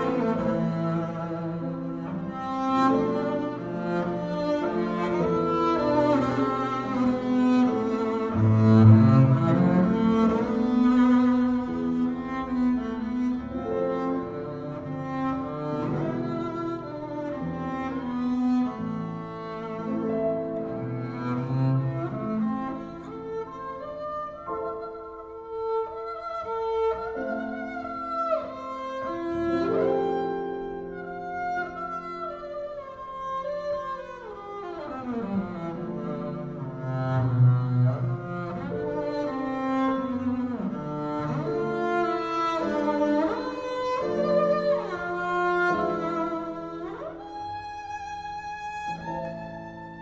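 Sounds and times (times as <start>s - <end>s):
violin and cello holding long notes: 0.0s - 23.2s, 34.6s - 50.0s
slow string melody: 0.0s - 50.0s.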